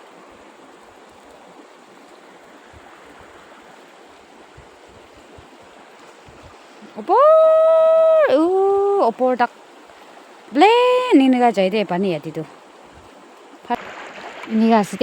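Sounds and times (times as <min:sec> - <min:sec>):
flowing water rushing: 0:00.0 - 0:15.0
person holding a long tone: 0:06.8 - 0:09.1.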